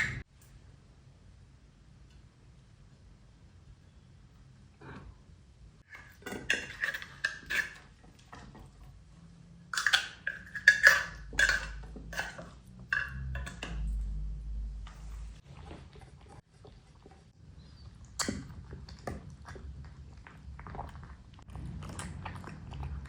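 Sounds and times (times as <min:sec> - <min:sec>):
dishes clinking and knocking: 0:05.9 - 0:07.8, 0:09.8 - 0:13.9.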